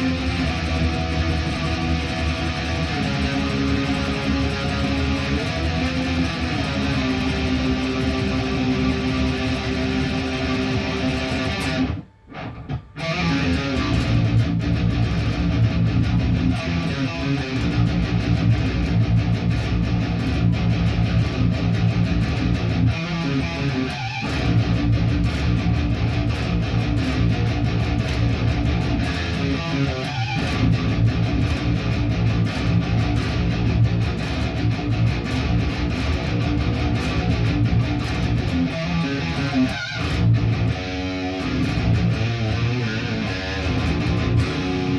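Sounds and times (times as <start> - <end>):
guitar strumming chords: 0.0 - 44.9.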